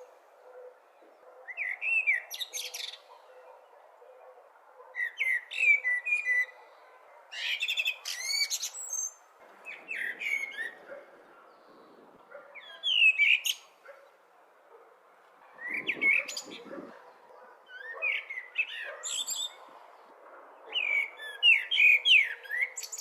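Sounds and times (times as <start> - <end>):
blackbird singing: 0.0 - 4.2, 4.9 - 11.8, 12.4 - 14.2, 15.5 - 19.7, 20.6 - 23.0
faint steady background noise: 0.0 - 16.0.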